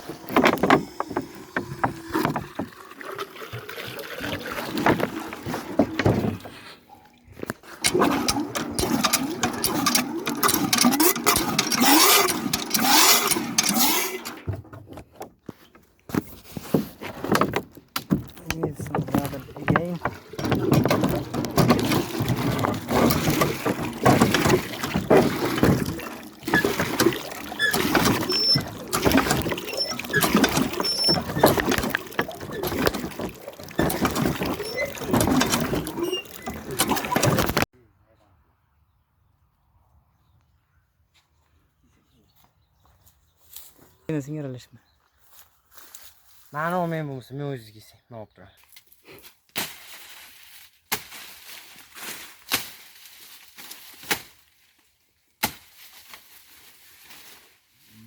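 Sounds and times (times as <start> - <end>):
knocks and thuds: 0.0 - 2.8, 4.8 - 6.5, 16.1 - 37.6
water sloshing and splashing: 0.0 - 37.7.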